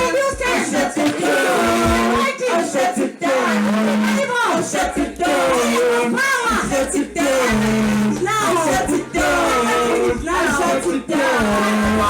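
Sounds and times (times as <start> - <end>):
gospel singing: 0.0 - 12.0
bass notes: 1.6 - 2.2, 4.8 - 12.0
instrumental backing: 6.4 - 12.0.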